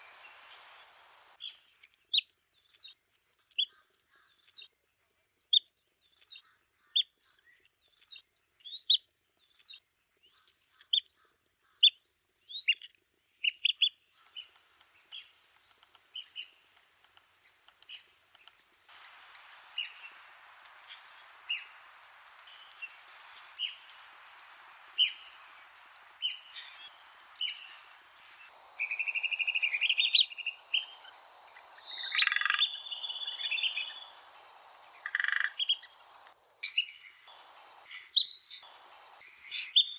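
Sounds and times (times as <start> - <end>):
rapid chattering bird calls: 0.0 - 1.4, 14.2 - 39.9
woodpecker calling: 0.0 - 1.4, 14.3 - 39.9.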